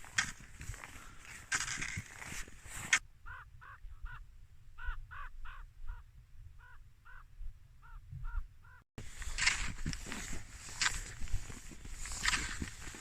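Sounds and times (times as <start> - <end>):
crow cawing: 3.2 - 4.2, 4.8 - 6.0.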